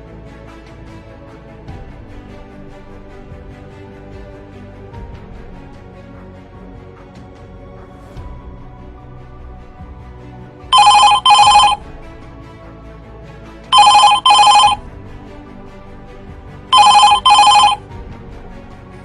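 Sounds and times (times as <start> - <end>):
background music: 0.0 - 19.0
telephone ringing: 10.8 - 11.8, 13.7 - 14.8, 16.7 - 17.8.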